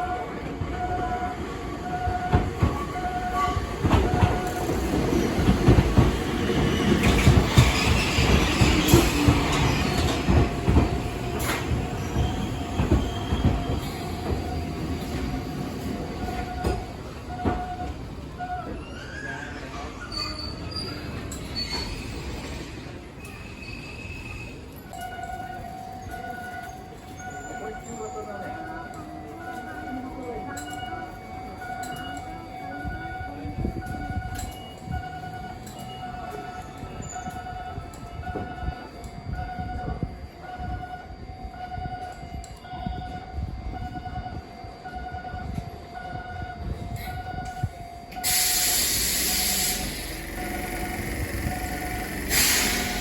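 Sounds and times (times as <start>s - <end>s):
train rumbling on rails: 0.0s - 53.0s
level crossing warning bell: 24.8s - 53.0s.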